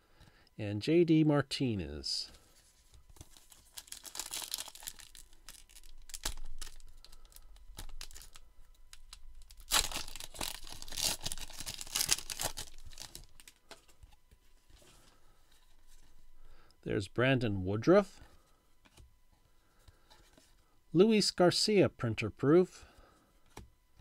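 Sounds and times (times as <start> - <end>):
wrapper tearing and crinkling: 3.2 - 13.6.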